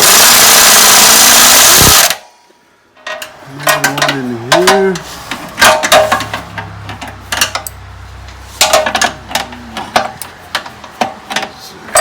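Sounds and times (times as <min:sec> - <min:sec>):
metal tools clanking: 0:03.0 - 0:12.0.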